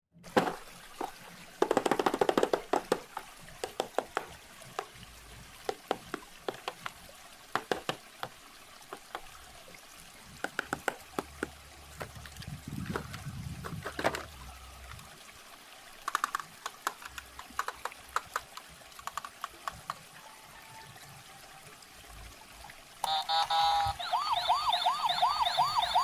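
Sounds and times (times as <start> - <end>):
faint water sound: 0.1 - 26.0
toy car and packaging clicking: 16.0 - 20.0.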